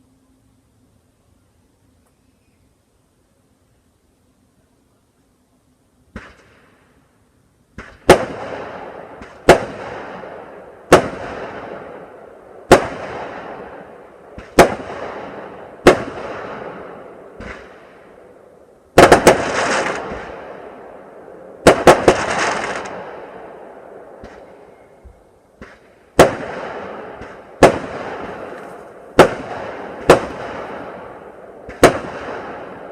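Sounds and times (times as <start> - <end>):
fireworks banging: 6.1 - 7.0, 7.7 - 18.1, 18.9 - 32.9
fireworks hissing: 21.8 - 23.0.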